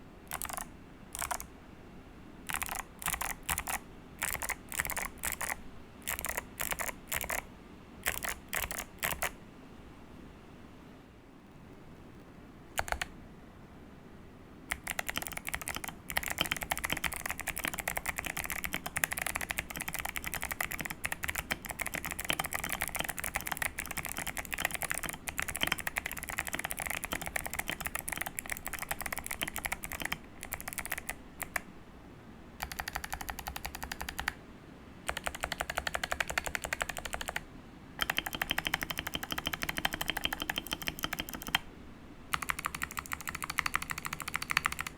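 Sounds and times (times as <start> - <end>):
clicky mechanical keyboard typing: 0.3 - 1.5, 2.5 - 9.4, 12.8 - 13.1, 14.7 - 31.7, 32.6 - 34.4, 35.1 - 37.4, 38.0 - 41.7, 42.3 - 44.9
long keyboard keys pressed: 0.3 - 1.5, 2.5 - 9.4, 12.8 - 13.1, 14.7 - 31.6, 32.6 - 34.4, 35.1 - 37.4, 38.0 - 41.7, 42.3 - 44.9.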